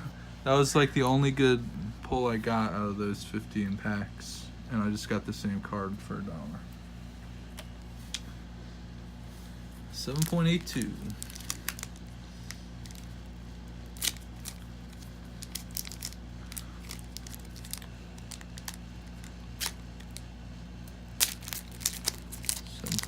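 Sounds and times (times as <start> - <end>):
steady low hum: 0.0 - 23.0
foil wrapper crinkling and tearing: 10.0 - 20.2, 21.1 - 23.0.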